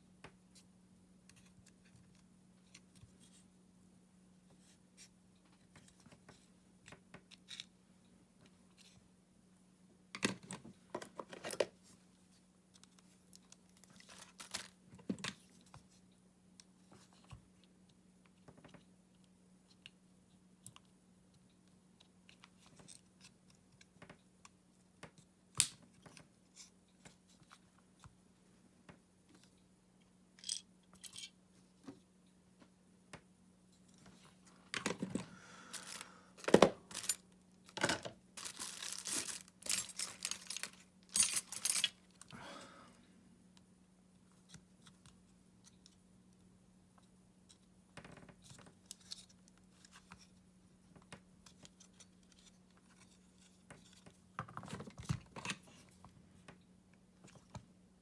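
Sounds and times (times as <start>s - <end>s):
faint steady hum: 0.0s - 58.0s
tools clicking and scraping: 34.8s - 42.3s.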